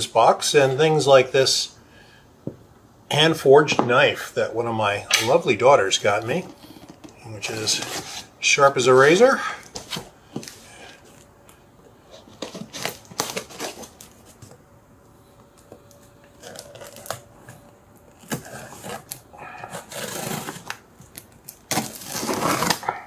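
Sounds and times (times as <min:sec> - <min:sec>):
knife slitting tape and cardboard: 0:18.2 - 0:23.0.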